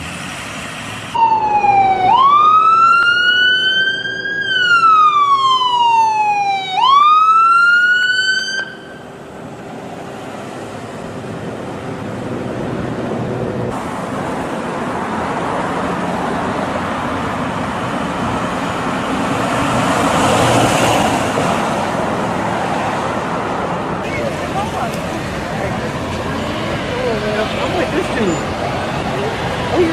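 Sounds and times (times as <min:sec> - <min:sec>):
road traffic noise: 0:00.0 - 0:29.9
ambulance siren wailing: 0:01.1 - 0:09.1.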